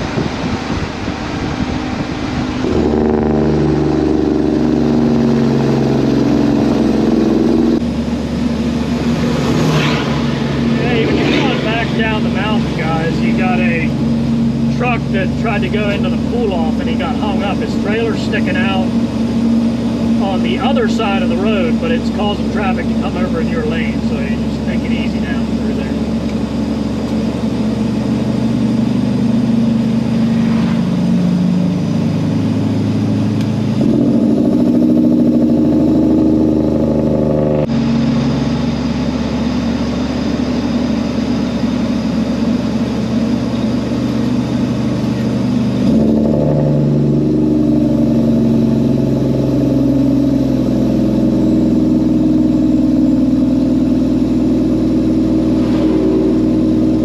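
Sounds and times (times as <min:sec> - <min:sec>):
diesel truck engine running: 0:00.0 - 0:57.0.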